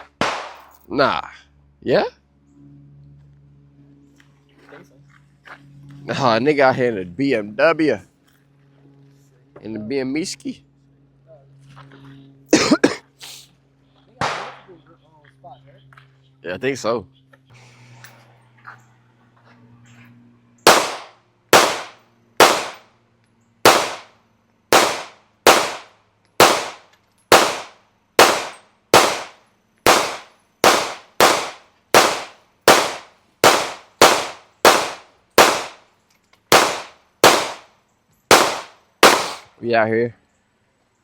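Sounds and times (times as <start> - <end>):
gunshots: 0.0 - 0.7, 14.2 - 14.7, 20.7 - 22.8, 23.6 - 24.1, 24.7 - 35.8, 36.5 - 37.7, 38.3 - 39.5.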